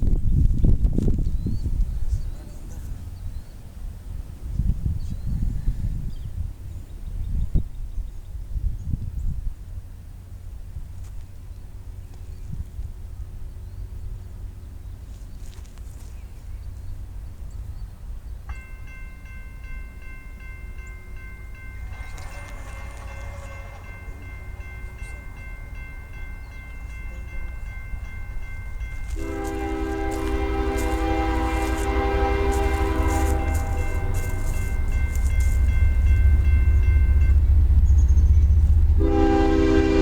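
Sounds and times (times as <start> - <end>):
diesel locomotive rumble: 0.0 - 40.0
crossing bell ringing: 18.5 - 40.0
locomotive horn: 21.4 - 27.5, 28.1 - 37.8, 38.5 - 40.0.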